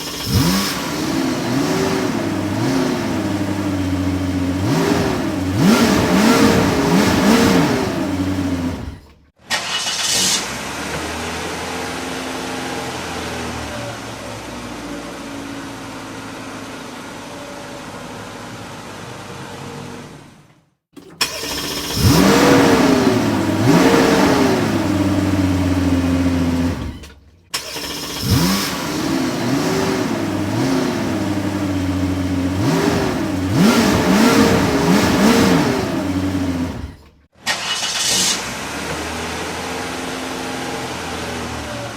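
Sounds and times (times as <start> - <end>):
car engine running steadily: 0.0 - 9.3, 21.0 - 37.2
car engine revving: 0.0 - 16.6, 21.2 - 41.9.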